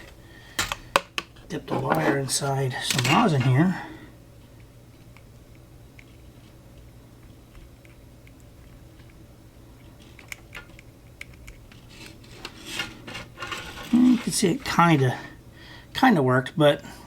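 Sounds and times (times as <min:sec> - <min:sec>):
low steady hum: 0:00.0 - 0:17.0
small clicks and crackles: 0:04.4 - 0:09.2, 0:09.8 - 0:12.8.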